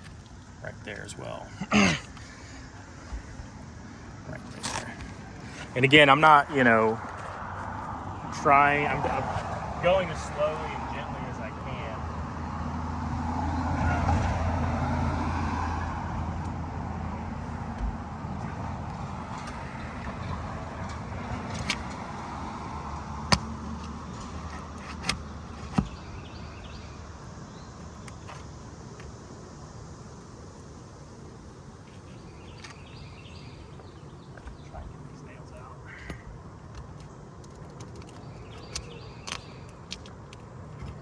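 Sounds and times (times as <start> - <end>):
car passing by: 8.3 - 17.2.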